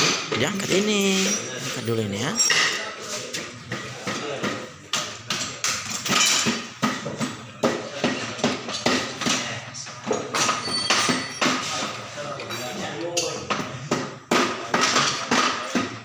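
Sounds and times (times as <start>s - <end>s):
metallic knocks and clinks of tools: 8.2s - 14.0s.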